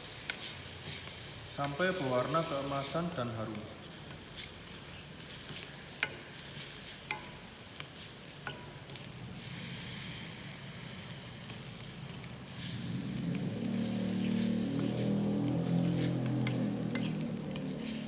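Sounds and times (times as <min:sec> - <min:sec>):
onion sizzling in a pan: 0:00.0 - 0:18.0
utensil scraping and tapping pan: 0:15.5 - 0:17.8.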